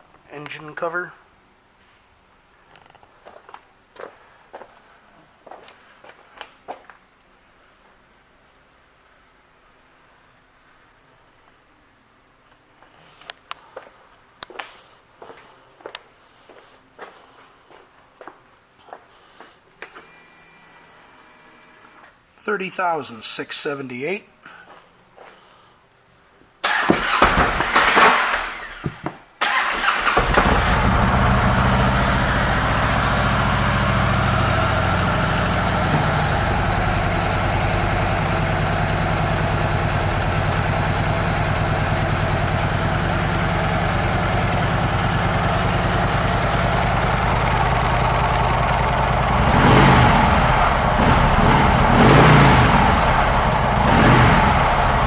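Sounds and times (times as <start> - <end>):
motorcycle engine starting and idling: 26.6 - 28.8, 29.4 - 55.0
engine revving: 29.5 - 55.0.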